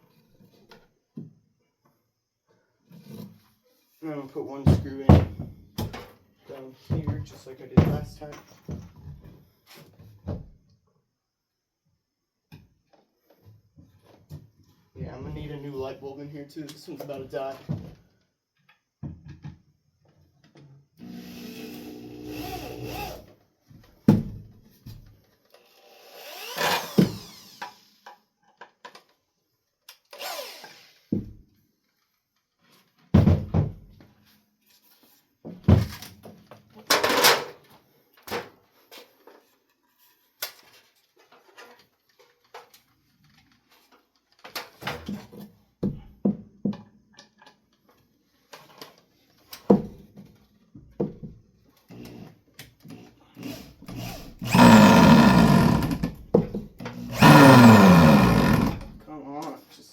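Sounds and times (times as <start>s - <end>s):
cordless drill driving screws: 21.0s - 23.3s, 25.7s - 28.0s, 30.1s - 31.0s, 52.9s - 56.2s, 56.9s - 59.0s
knocks of wood and tools handled: 48.5s - 51.5s, 54.5s - 59.0s.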